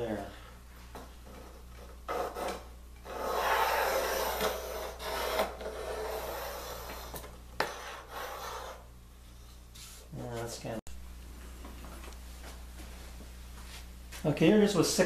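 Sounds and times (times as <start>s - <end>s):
pencil scratching plywood: 2.1s - 8.8s.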